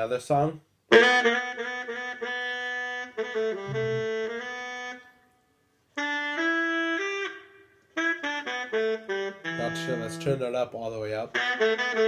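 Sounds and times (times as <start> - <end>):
music through a speaker: 3.7 - 4.1.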